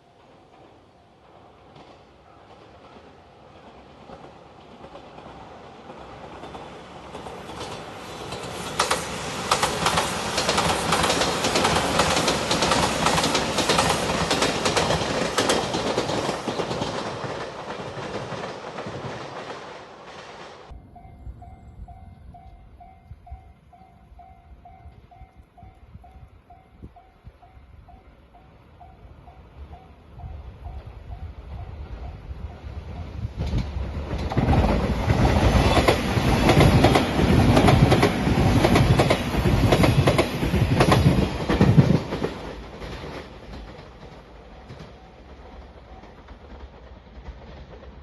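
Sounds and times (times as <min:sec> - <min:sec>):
train passing at speed: 0:00.0 - 0:48.0
wheels clacking over rail joints: 0:00.2 - 0:20.8, 0:33.4 - 0:48.0
level-crossing warning bell: 0:20.7 - 0:33.3.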